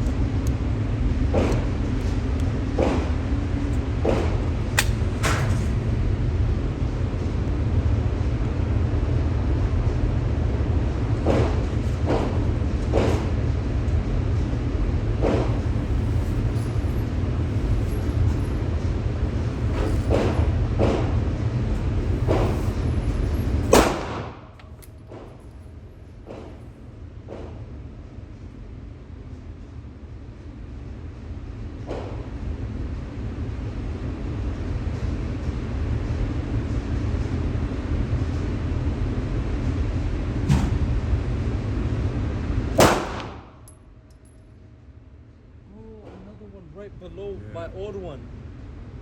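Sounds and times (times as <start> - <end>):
gunshots: 23.7 - 24.5, 42.8 - 43.6
low rumble: 39.0 - 44.0.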